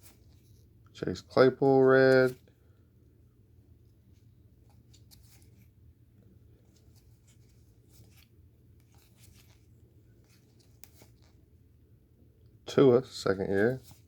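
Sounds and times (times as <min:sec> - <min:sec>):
low room hum: 0:00.0 - 0:14.0
trading cards clicking and rustling: 0:06.7 - 0:11.4.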